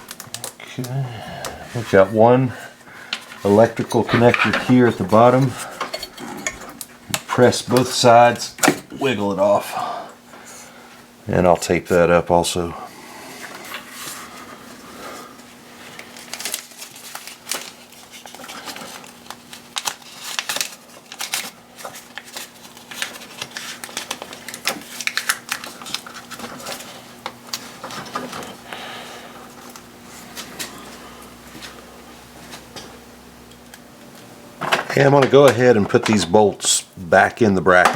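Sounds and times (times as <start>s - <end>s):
tape crinkling and clicking: 0.0s - 1.6s, 15.9s - 28.6s
faint steady hum: 0.0s - 37.9s.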